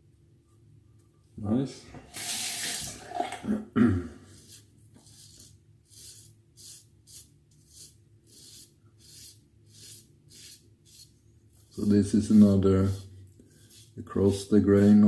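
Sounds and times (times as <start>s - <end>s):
razor scraping stubble: 4.4s - 15.0s.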